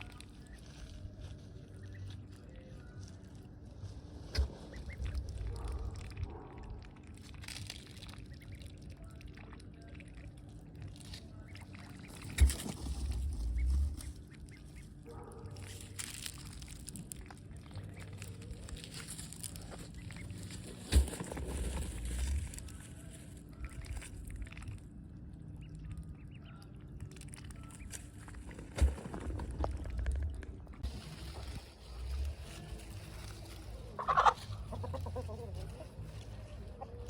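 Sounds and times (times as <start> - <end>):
low rumble: 0.0 - 37.0
ducks quacking: 30.8 - 37.0.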